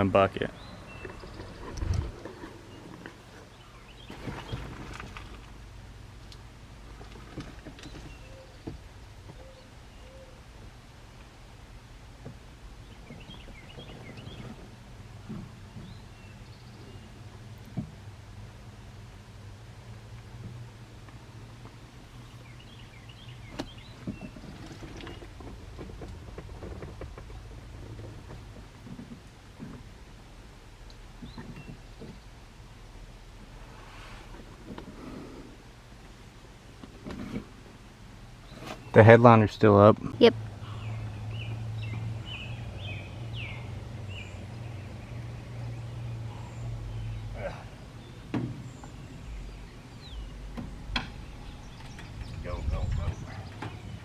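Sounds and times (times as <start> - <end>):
bird chirping: 0.4 - 4.7, 7.8 - 10.4, 12.8 - 14.6, 22.2 - 25.3, 40.6 - 54.0.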